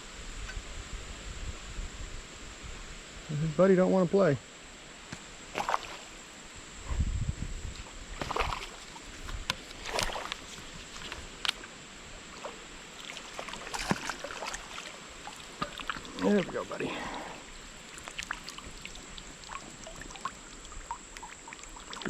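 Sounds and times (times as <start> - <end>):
fish splashing in water: 5.5 - 6.2, 8.2 - 11.6, 12.3 - 22.0.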